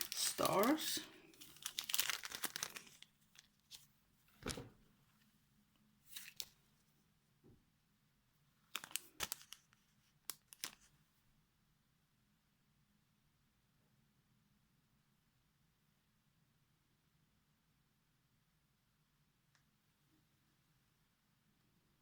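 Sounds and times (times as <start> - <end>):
plastic packaging crinkling: 0.0 - 3.8, 6.1 - 6.6, 8.7 - 10.9.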